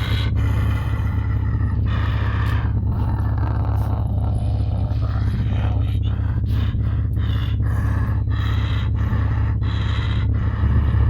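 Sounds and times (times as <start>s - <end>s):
breathy voice-like sounds: 0.0s - 11.0s
low hum: 0.0s - 11.0s.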